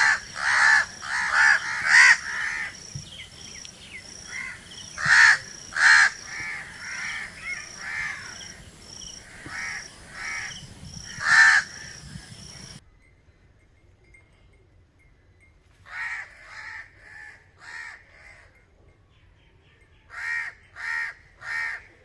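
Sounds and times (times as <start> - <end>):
faint high chirp: 0.0 - 11.2
crows cawing: 0.0 - 12.8.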